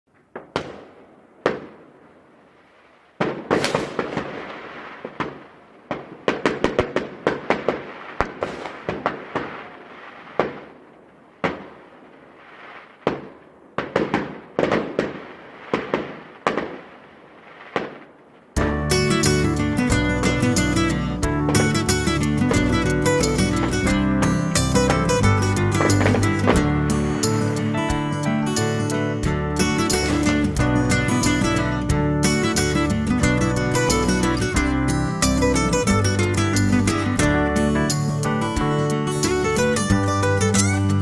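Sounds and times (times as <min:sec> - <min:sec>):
fireworks bangs and crackle: 0:00.1 - 0:38.8.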